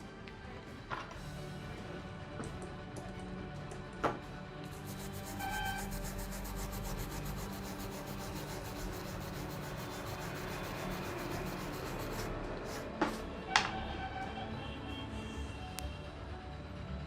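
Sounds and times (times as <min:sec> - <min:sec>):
brush scrubbing circuit board: 0:04.7 - 0:12.8.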